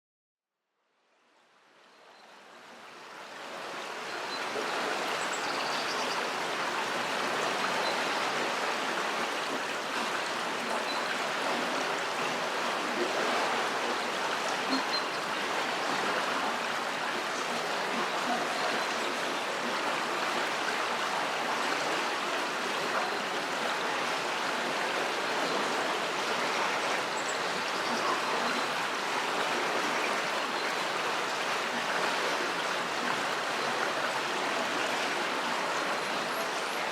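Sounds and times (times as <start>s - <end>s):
river water rushing: 1.8s - 36.9s.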